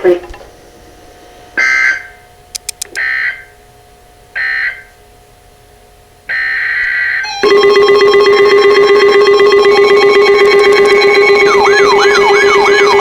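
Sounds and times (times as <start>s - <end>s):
screeching data tone bursts: 6.3s - 13.0s
buzzy pulsing alert tone: 7.2s - 13.0s.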